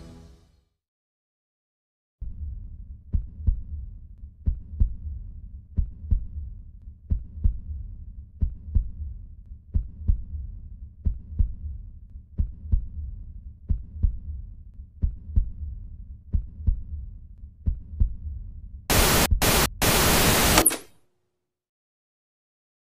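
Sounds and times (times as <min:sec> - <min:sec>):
amplified heartbeat: 0:02.2 - 0:20.6
low hum: 0:18.9 - 0:20.8
loud static hiss: 0:18.9 - 0:20.9.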